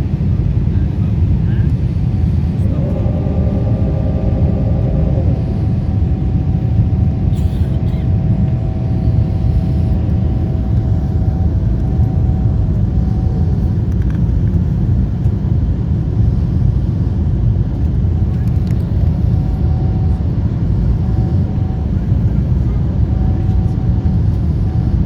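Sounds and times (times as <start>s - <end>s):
airliner rumbling: 0.0s - 25.0s
jet engine tones: 0.8s - 25.0s.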